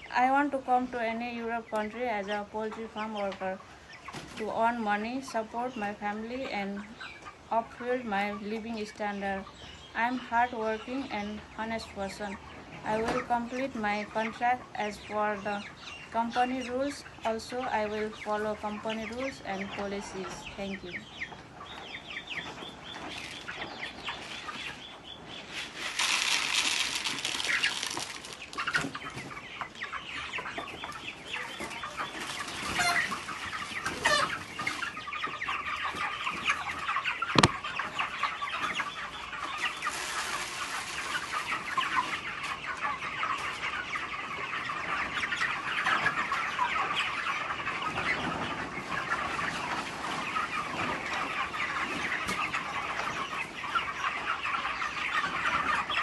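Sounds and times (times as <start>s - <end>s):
chickens clucking: 0.0s - 56.0s
wings flapping: 25.6s - 29.0s.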